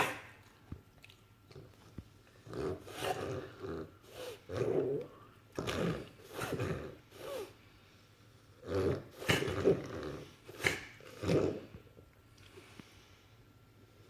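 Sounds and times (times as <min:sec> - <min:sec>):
dog reverse sneezing: 0:06.2 - 0:07.6, 0:09.1 - 0:09.6, 0:10.5 - 0:11.0.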